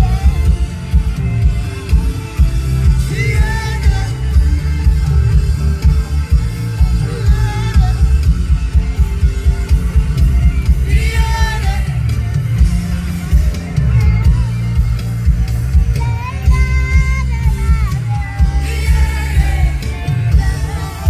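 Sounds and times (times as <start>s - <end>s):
loud music with heavy bass: 0.0s - 21.0s
person singing: 0.0s - 21.0s.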